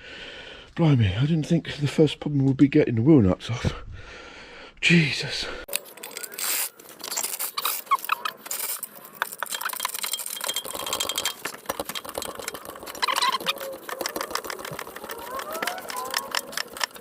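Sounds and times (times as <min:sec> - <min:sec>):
metal clicks and rattles: 0:05.8 - 0:17.0
brief squeaks: 0:13.0 - 0:14.2.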